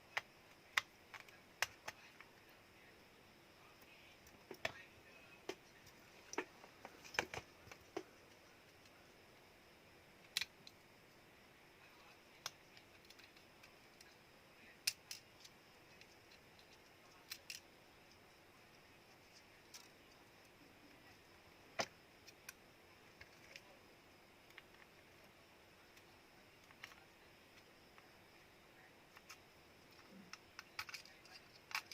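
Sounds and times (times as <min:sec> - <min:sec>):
tools and plastic parts clicking: 0:12.4 - 0:14.2, 0:14.8 - 0:17.7, 0:29.1 - 0:31.9.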